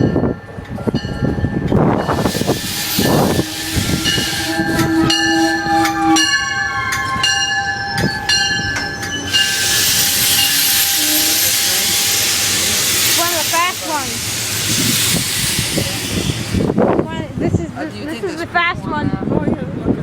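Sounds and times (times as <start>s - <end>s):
train whining tones: 0.9s - 17.2s
loud steady hiss: 2.0s - 6.1s, 9.3s - 16.9s.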